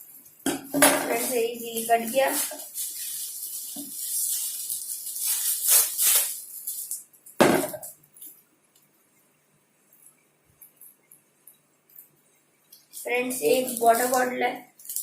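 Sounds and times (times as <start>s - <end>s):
wrapping paper crinkling: 1.1s - 8.9s, 12.0s - 15.0s.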